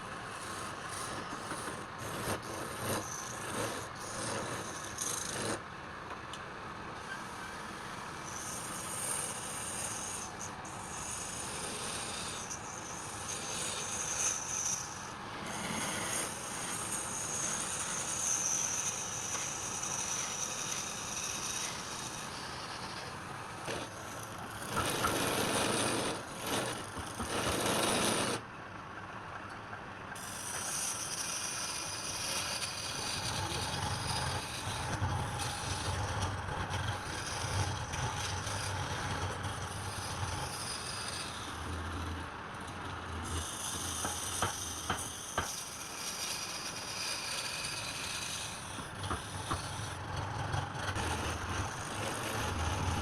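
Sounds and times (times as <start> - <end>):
lathe tool cutting wood: 0.3 - 5.6, 7.2 - 28.4, 30.2 - 53.0
wood lathe running: 0.4 - 5.6, 7.2 - 28.4, 30.2 - 53.0.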